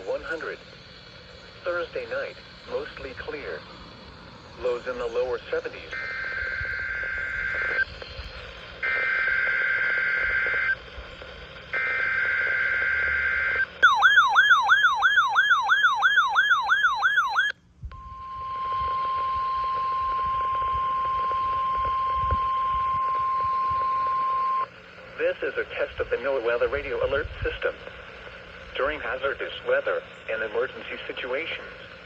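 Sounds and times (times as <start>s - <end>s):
steady attention tone: 0.0s - 27.1s
digital data tone bursts: 4.6s - 25.4s
warbling siren-like tone: 5.9s - 10.8s, 11.7s - 24.7s.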